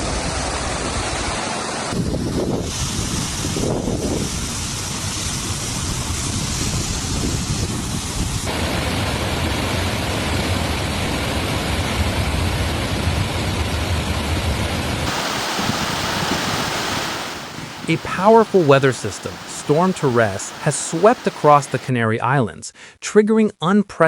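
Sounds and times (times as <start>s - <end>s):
rushing water roar: 0.0s - 21.9s
wind buffeting microphone: 1.9s - 8.5s, 15.0s - 21.9s.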